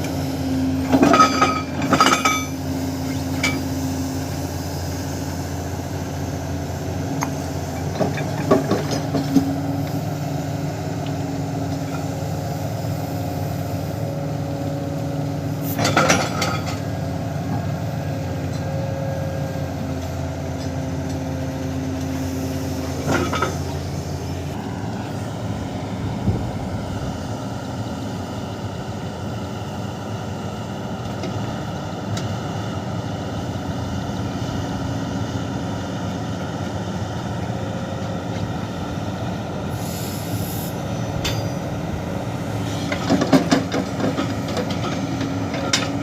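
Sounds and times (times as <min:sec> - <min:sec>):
excavator diesel engine running: 0:00.0 - 0:46.0
sharp metallic clanks: 0:41.2 - 0:41.7.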